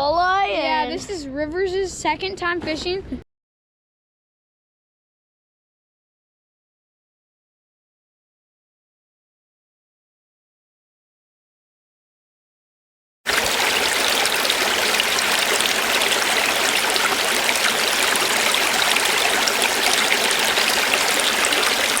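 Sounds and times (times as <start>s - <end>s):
river water rushing: 13.3s - 22.0s.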